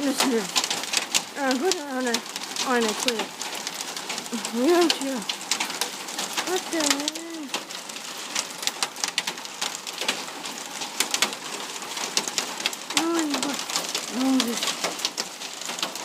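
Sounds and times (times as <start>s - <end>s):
hail pelting hard surfaces: 0.0s - 16.0s
low voice-like sounds: 13.0s - 14.6s.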